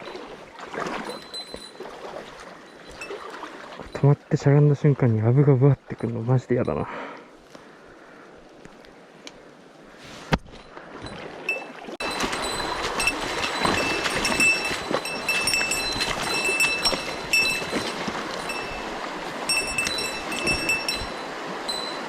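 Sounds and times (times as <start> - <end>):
stream water rushing: 0.0 - 7.4, 8.3 - 22.0.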